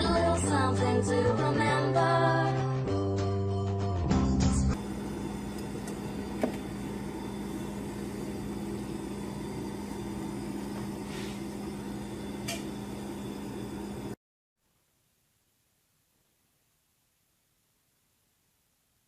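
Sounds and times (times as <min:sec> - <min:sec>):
steady mechanical hum: 0:04.7 - 0:14.2.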